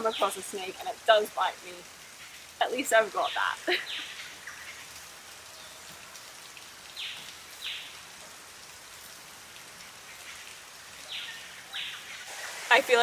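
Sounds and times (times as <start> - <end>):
rainforest ambience hiss: 0.0 - 13.0.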